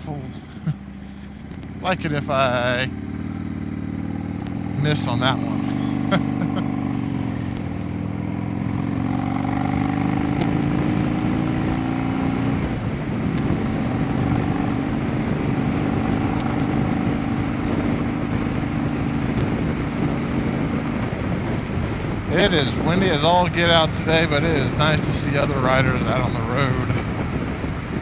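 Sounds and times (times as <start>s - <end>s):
motorcycle engine running: 0.0s - 28.0s
wind noise on microphone: 10.0s - 28.0s.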